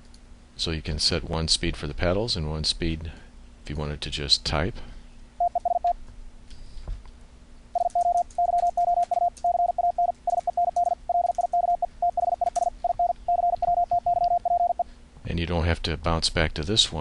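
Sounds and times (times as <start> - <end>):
morse code tone: 5.4 - 6.0, 7.8 - 14.8.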